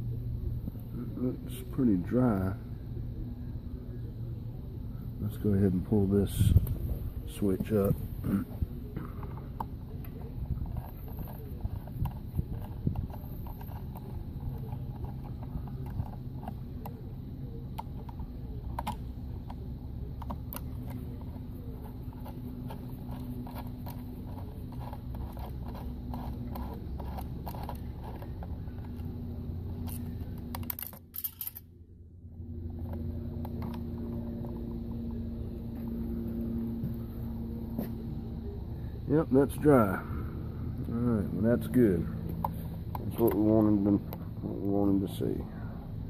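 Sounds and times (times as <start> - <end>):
low machinery hum: 0.0 - 46.0
light clicks and scrapes: 6.4 - 31.7.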